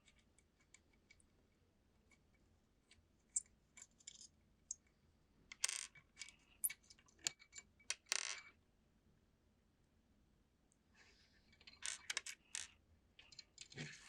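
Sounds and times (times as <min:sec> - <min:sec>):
small metal parts clicking: 0:11.6 - 0:13.8.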